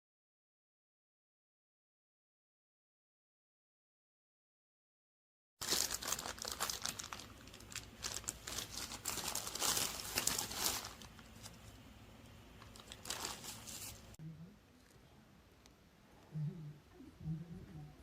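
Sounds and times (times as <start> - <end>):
packaging crinkling: 5.6 - 11.8, 12.6 - 14.2.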